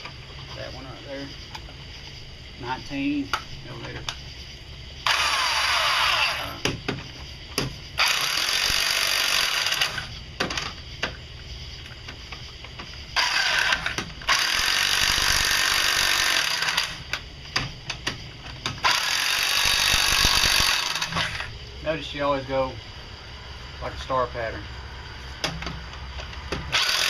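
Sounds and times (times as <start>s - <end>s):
power tool running lug nuts: 5.0s - 6.6s, 8.0s - 10.1s, 13.2s - 17.2s, 18.6s - 21.5s, 26.5s - 27.0s.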